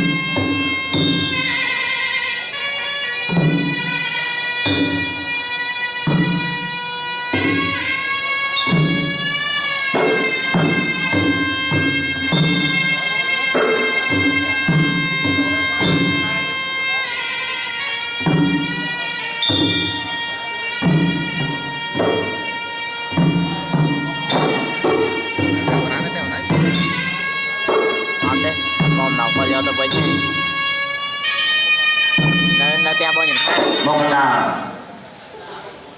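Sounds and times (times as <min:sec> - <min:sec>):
shrill reed oboe melody: 0:00.0 - 0:34.6
hand drum strokes: 0:18.2 - 0:30.7.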